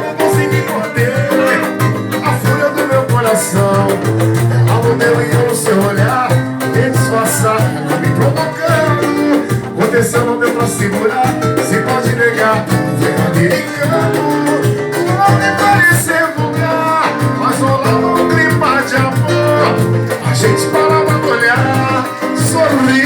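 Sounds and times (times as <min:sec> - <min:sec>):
guitar over steady beat: 0:00.0 - 0:23.0.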